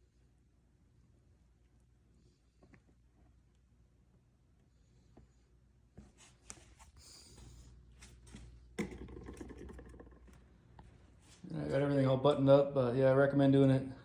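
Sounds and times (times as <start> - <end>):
faint handling clicks and rustles: 5.0 - 8.7.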